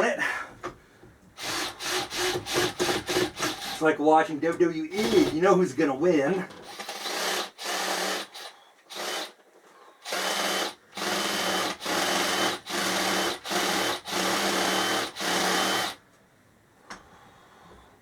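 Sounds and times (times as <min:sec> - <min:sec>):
power drill running: 0:01.4 - 0:03.8, 0:05.0 - 0:05.4, 0:06.6 - 0:09.4, 0:10.0 - 0:16.0.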